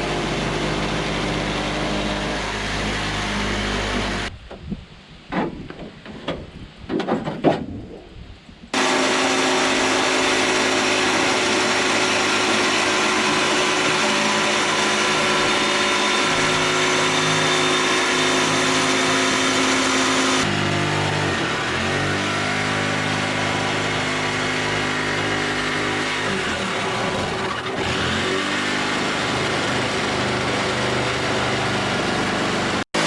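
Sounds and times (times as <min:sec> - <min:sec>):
power tool humming: 0:00.0 - 0:04.3, 0:08.8 - 0:33.0
knocks and clatter: 0:05.3 - 0:07.7.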